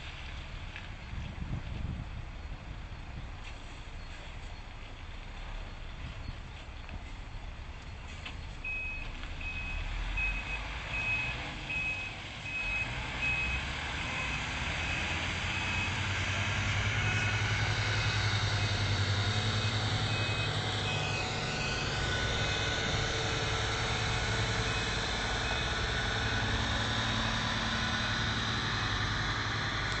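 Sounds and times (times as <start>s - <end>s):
truck diesel engine running: 4.1s - 30.0s
reversing alarm beeping: 8.6s - 16.1s, 16.9s - 23.4s.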